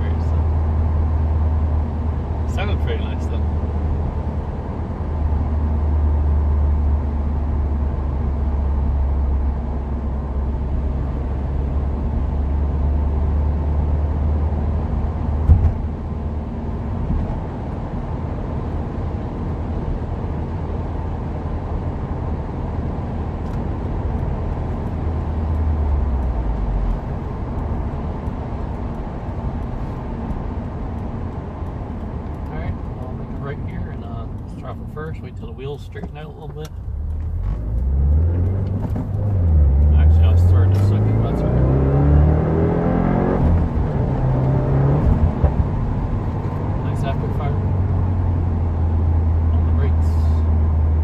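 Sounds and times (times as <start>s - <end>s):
car engine and road drone: 0.0s - 51.0s
thump: 15.4s - 15.8s.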